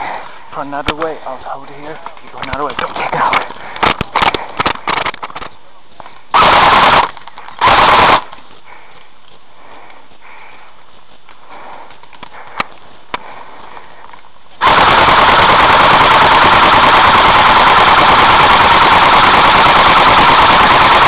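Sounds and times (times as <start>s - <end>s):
airsoft gun firing bursts: 6.3s - 8.4s, 14.6s - 21.0s.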